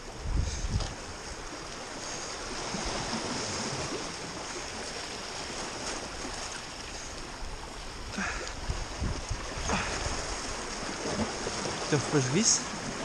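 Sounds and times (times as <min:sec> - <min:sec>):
sea waves washing: 0:00.0 - 0:13.0.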